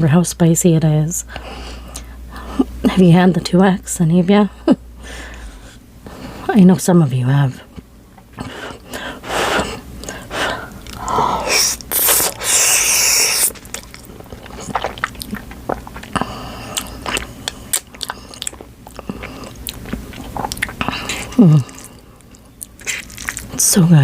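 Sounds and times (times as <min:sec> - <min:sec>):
wet mouth clicks: 0:10.8 - 0:16.2
chewing: 0:11.9 - 0:23.6.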